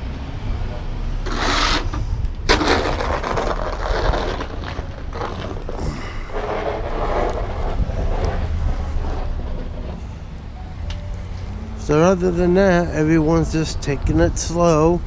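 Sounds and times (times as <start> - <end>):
wind buffeting microphone: 1.9 - 10.6.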